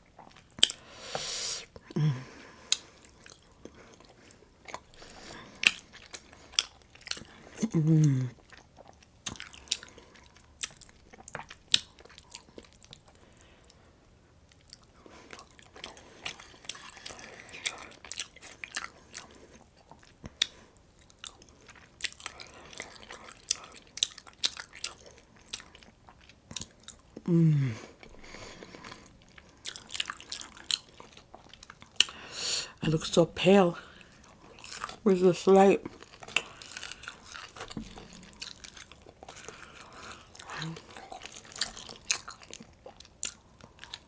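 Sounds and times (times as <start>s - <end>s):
chewing and crunching food: 0.0s - 0.9s, 1.6s - 44.0s
person humming: 2.0s - 2.3s, 7.6s - 8.3s, 27.3s - 27.9s.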